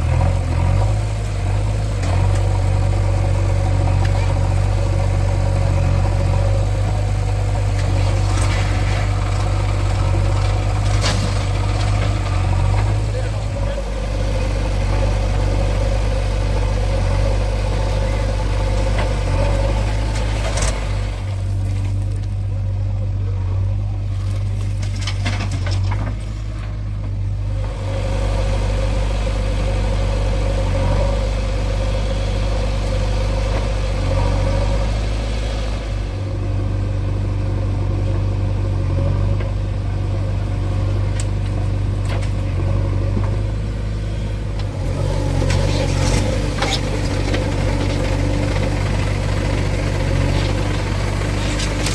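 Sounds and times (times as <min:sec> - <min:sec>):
diesel engine droning: 0:00.0 - 0:51.9.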